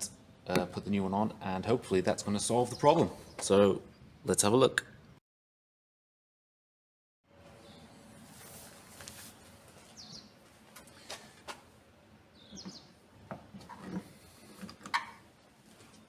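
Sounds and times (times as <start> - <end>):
bird chirping: 7.6 - 8.0, 9.9 - 11.0, 12.3 - 13.0.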